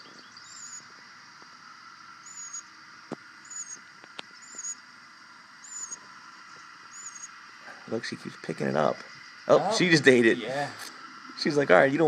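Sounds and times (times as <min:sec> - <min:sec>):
bird high-pitched chirp: 0:00.0 - 0:00.9, 0:02.2 - 0:02.7, 0:03.4 - 0:04.8, 0:05.6 - 0:06.0, 0:06.9 - 0:07.4
faint steady background hum: 0:00.0 - 0:12.0.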